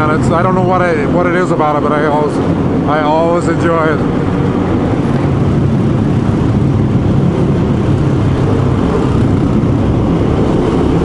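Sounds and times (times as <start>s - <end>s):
road noise: 0.0s - 11.0s
wind noise: 0.0s - 11.0s
motorcycle engine running in tunnel: 4.1s - 11.0s.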